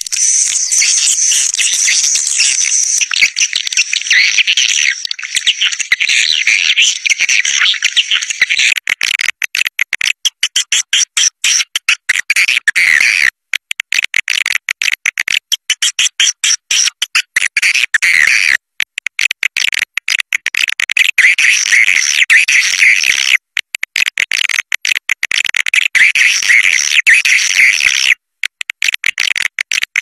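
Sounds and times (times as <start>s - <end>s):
swiftlets twittering: 0.0s - 8.5s.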